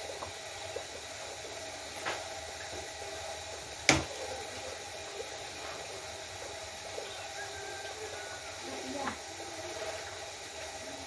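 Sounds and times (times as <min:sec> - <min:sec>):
liquid boiling in a pot: 0:00.0 - 0:11.0.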